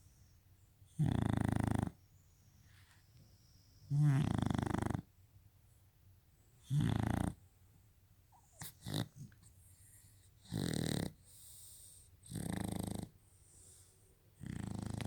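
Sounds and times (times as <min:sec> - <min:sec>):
dog snoring: 0:00.9 - 0:02.0, 0:03.9 - 0:05.1, 0:06.6 - 0:07.4, 0:08.4 - 0:13.2, 0:14.4 - 0:15.0.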